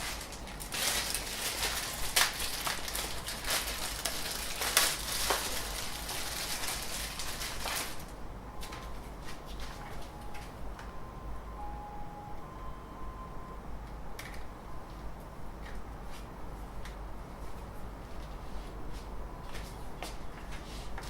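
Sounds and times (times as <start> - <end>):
cable rustling and clicking: 0.0 - 10.9
thin steady tone: 8.2 - 15.5.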